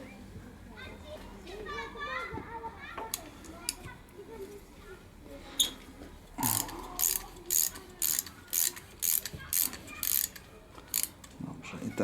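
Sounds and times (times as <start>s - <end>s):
ratchet clicking: 6.5s - 11.3s.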